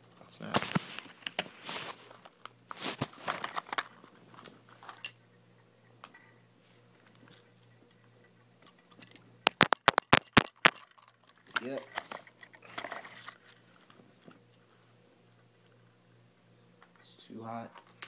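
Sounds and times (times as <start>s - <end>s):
plastic toy car scraping and rustling: 0.5s - 5.0s, 11.4s - 14.0s.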